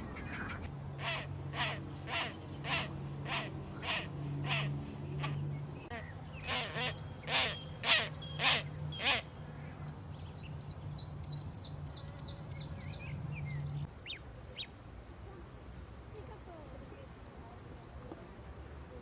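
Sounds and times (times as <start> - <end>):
birds calling harshly: 0.0 - 14.7.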